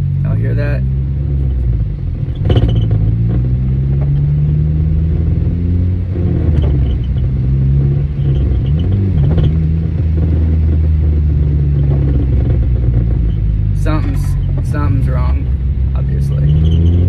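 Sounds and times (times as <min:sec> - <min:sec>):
car engine drone in cabin: 0:00.0 - 0:17.0
short clanks: 0:13.8 - 0:14.8.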